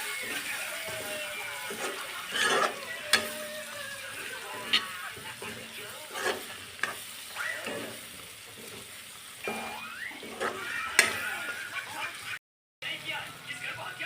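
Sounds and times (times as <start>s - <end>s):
food sizzling in a pan: 0.0s - 14.0s
spoon clinking against pan: 0.2s - 3.6s, 4.4s - 7.0s, 9.4s - 11.6s.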